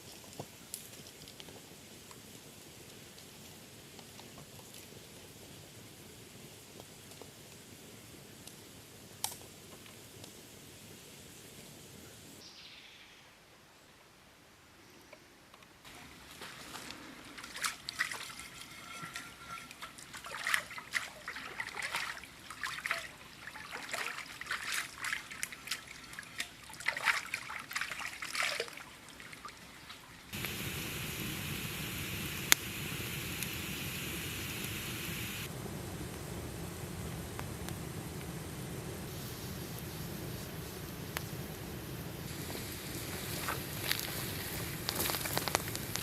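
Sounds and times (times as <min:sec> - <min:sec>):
water splashing and trickling: 0:15.9 - 0:30.4.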